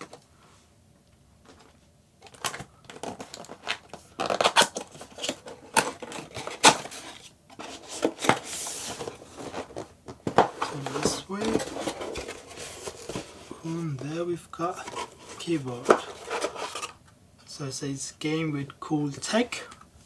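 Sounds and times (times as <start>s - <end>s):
cardboard tearing: 2.4s - 13.8s, 14.7s - 17.0s
knife cutting cardboard box: 4.2s - 9.8s, 10.4s - 13.7s, 14.7s - 17.0s.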